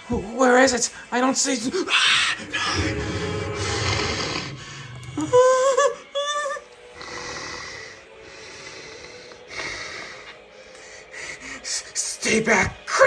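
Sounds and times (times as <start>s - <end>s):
dragon rasping growl: 1.8s - 6.1s
dragon wavering shrieks: 1.9s - 6.2s.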